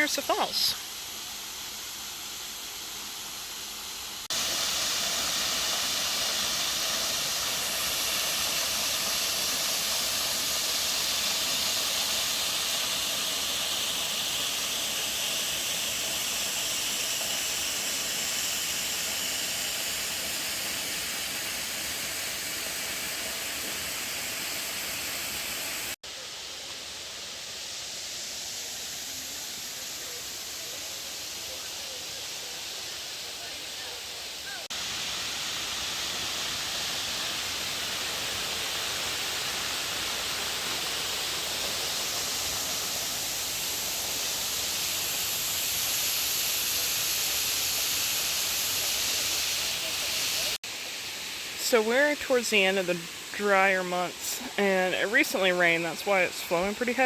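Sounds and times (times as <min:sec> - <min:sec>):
waterfall rushing: 0:26.7 - 0:57.0.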